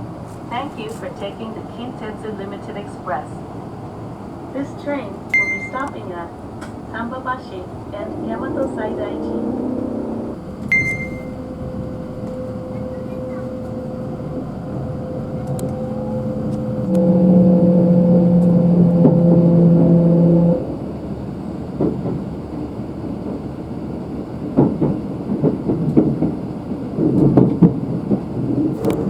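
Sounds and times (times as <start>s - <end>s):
train hum: 0.0s - 29.0s
train knocks and rumble: 0.0s - 29.0s
train signal held tones: 5.3s - 6.2s, 7.1s - 14.0s.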